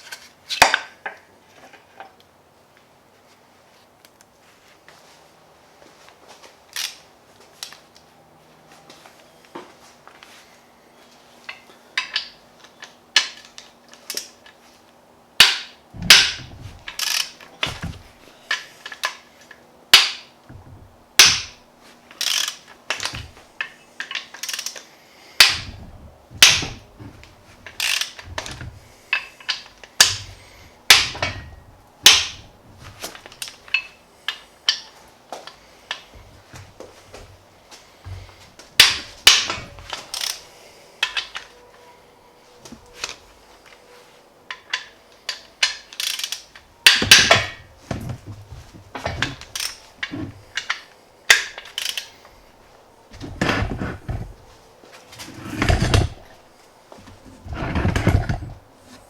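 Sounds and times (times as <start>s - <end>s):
metal engine parts clanking: 15.4s - 19.2s, 20.0s - 21.6s, 22.2s - 24.7s, 25.4s - 34.0s, 38.1s - 40.4s, 44.5s - 52.2s, 53.1s - 54.6s, 55.2s - 56.5s, 57.1s - 58.6s.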